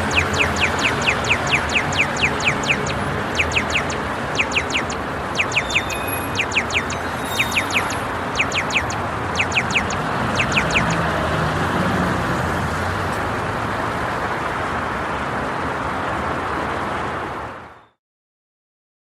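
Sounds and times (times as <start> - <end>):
high falling chirps: 0.0 - 11.1
street traffic hum: 0.0 - 17.8.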